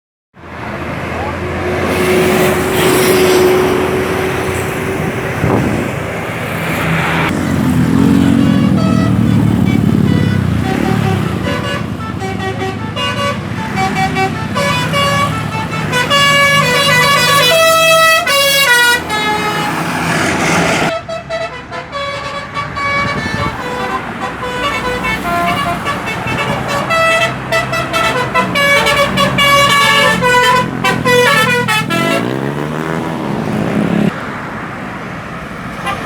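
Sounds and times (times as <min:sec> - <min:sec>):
road noise: 0:00.3 - 0:36.0
vehicle engine: 0:00.4 - 0:36.0
bus melody horn playing a tune: 0:07.4 - 0:20.1, 0:20.8 - 0:33.0, 0:35.8 - 0:36.0.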